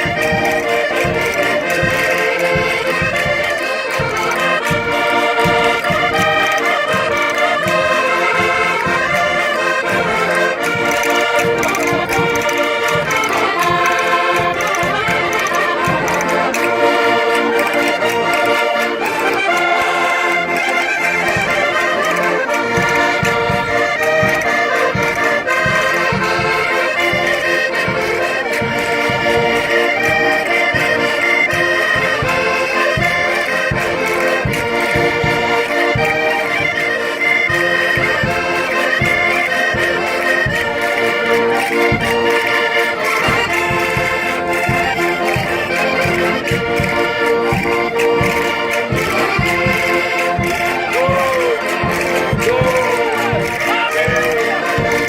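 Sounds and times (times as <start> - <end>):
low thumping beat: 0.0 - 18.8, 37.4 - 55.0
button accordions playing folk dance: 0.0 - 55.0.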